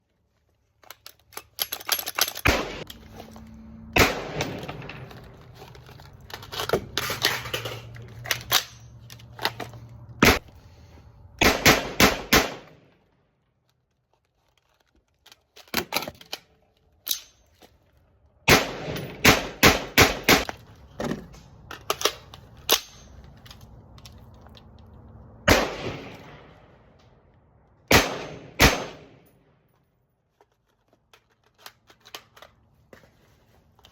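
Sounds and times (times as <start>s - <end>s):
rifle gunshots: 2.4s - 2.9s, 3.9s - 5.1s, 11.4s - 12.8s, 18.5s - 20.4s, 25.5s - 26.6s, 27.9s - 29.2s.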